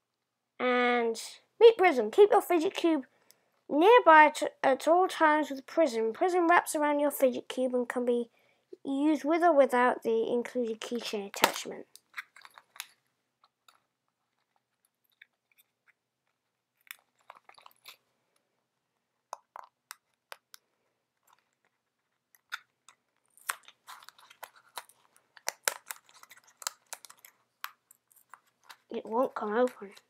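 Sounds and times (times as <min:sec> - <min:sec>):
packaging clicking and crackling: 0:11.4 - 0:18.1, 0:19.4 - 0:30.0.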